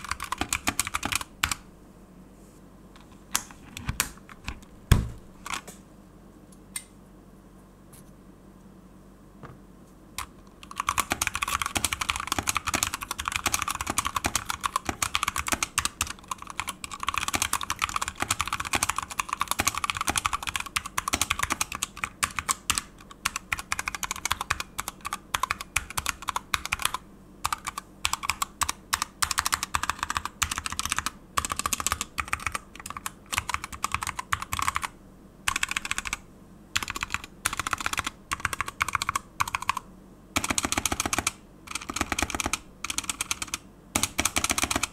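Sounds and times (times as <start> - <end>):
mechanical keyboard typing: 0.0 - 1.6, 5.4 - 5.7, 10.2 - 34.9, 35.5 - 36.2, 36.8 - 44.9.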